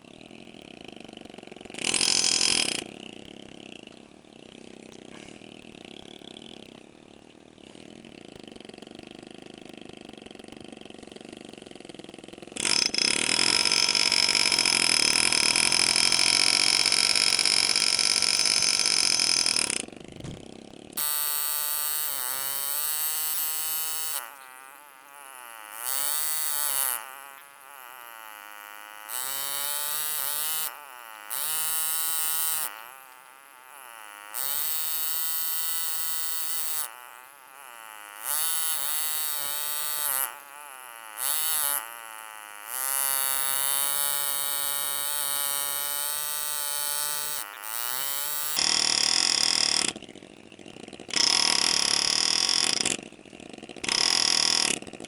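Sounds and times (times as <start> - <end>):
engraving handpiece buzzing: 1.3 - 3.1, 10.6 - 50.2, 51.1 - 53.1, 53.8 - 55.0
machine whir: 42.7 - 48.6.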